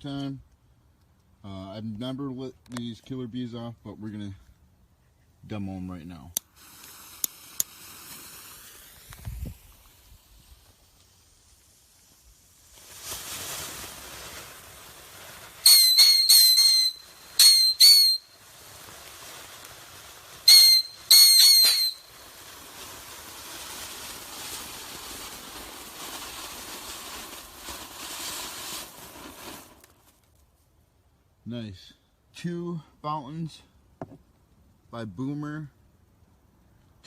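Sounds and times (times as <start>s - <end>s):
firework fountains hissing: 6.4s - 30.1s
shrill firework whistling: 7.0s - 14.0s, 15.5s - 18.6s, 20.4s - 29.9s.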